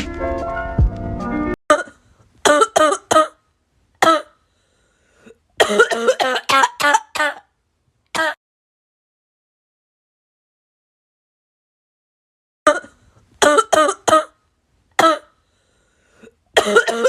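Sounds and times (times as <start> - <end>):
person coughing: 1.7 - 3.4, 4.0 - 4.4, 5.2 - 7.5, 8.2 - 8.4, 12.7 - 14.4, 15.0 - 15.3, 16.6 - 17.0.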